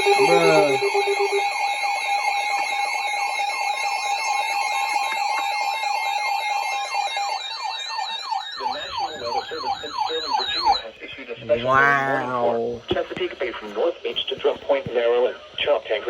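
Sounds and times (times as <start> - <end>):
lower-pitched alarm: 0.0 - 12.5
electronic alarms sounding: 0.0 - 12.6.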